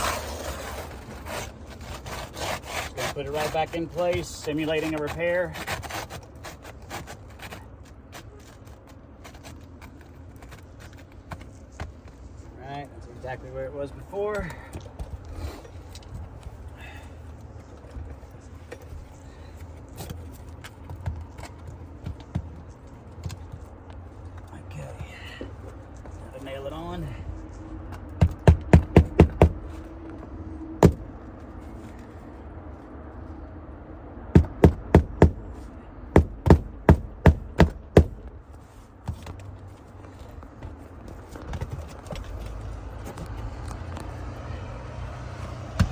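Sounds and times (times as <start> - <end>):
shingles clicking and scraping: 0.0 - 12.4, 13.9 - 29.9
low background rumble: 0.0 - 45.9
hammer striking a nail: 28.2 - 29.6, 30.8 - 31.0, 34.3 - 35.4, 36.1 - 38.2.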